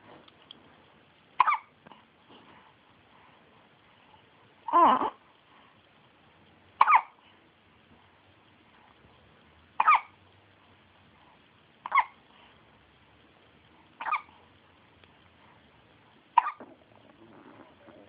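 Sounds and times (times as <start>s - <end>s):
baby hiccuping: 1.4s - 1.7s, 6.8s - 7.2s, 9.8s - 10.1s, 11.8s - 12.2s, 14.0s - 14.3s, 16.4s - 16.7s.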